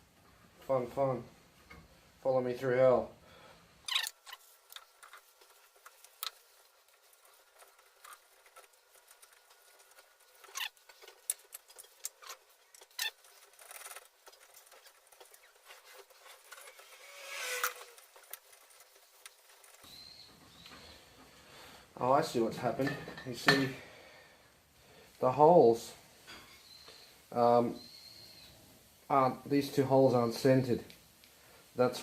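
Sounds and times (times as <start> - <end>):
tool scraping: 3.9 - 21.0.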